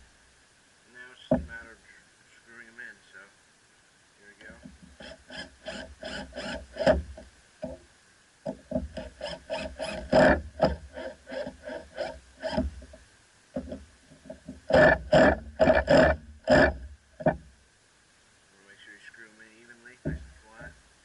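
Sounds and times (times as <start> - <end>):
power drill driving screws: 5.0 - 7.1, 8.9 - 12.7, 14.7 - 16.8.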